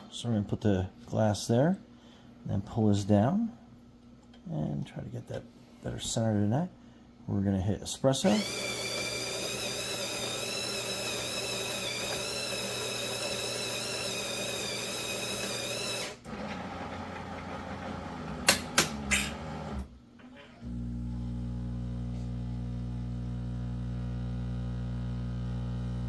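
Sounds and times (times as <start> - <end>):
coffee grinder whining: 8.2 - 26.0
pump buzzing hum: 8.2 - 26.0.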